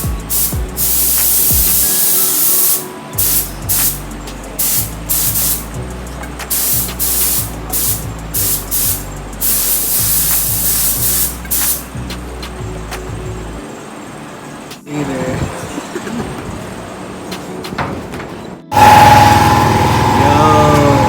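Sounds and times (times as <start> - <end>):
paint spray gun hissing: 0.0 - 5.8, 6.4 - 12.0.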